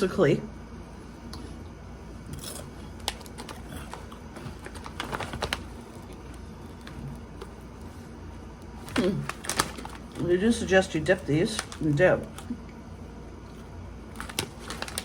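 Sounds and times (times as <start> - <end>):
tortilla chips crackling: 2.4 - 7.9, 8.6 - 10.3, 11.0 - 12.6, 14.1 - 15.0.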